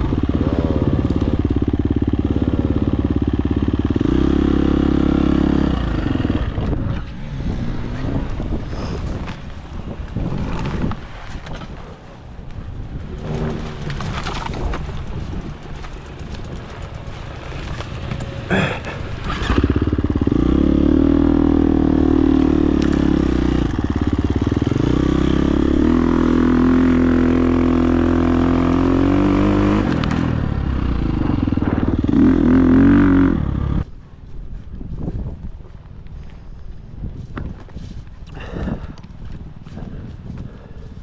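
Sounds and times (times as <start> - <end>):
dirt bike engine revving: 0.0 - 8.3, 13.1 - 14.7, 15.3 - 33.8.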